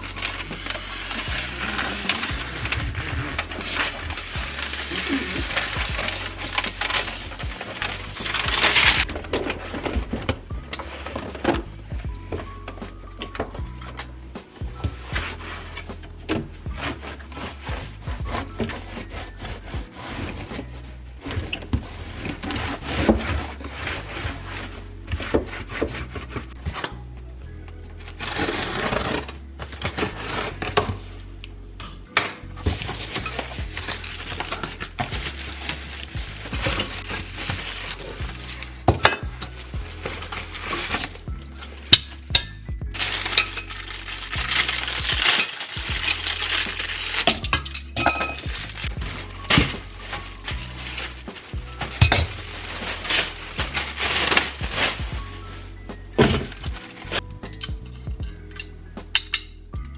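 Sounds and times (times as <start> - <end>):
rubbing and rustling: 0.0 - 59.7
household items clinking and knocking: 0.0 - 59.9
household items knocking and clattering: 32.2 - 59.4.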